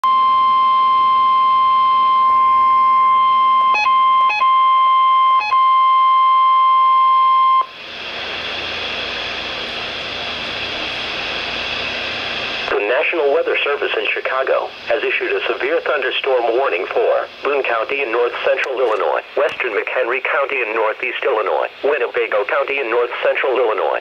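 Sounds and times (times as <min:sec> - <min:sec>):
steady high alarm beep: 0:00.0 - 0:07.8
radio static hiss: 0:07.7 - 0:24.0.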